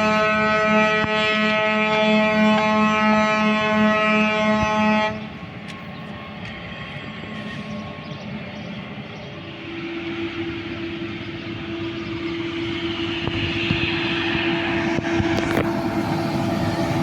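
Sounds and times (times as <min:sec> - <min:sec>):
locomotive air horn: 0:00.0 - 0:05.4, 0:09.6 - 0:16.6
train rumbling past: 0:00.0 - 0:17.0.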